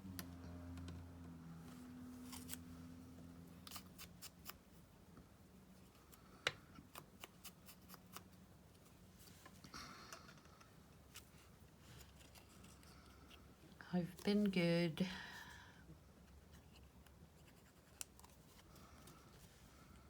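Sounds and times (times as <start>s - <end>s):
low steady hum: 0.0s - 20.0s
scissors snipping paper: 3.6s - 4.6s, 6.8s - 8.3s.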